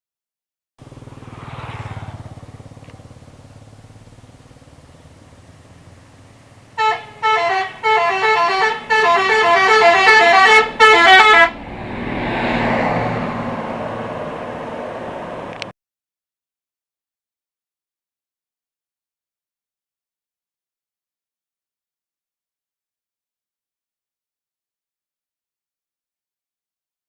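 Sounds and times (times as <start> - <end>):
traffic noise: 0.8 - 15.7
musical bus horn: 6.8 - 11.6.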